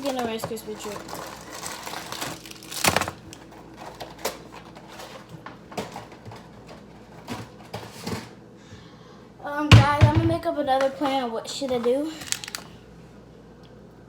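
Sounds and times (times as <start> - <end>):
small objects clicking and rustling: 0.0 - 8.2, 11.7 - 12.7.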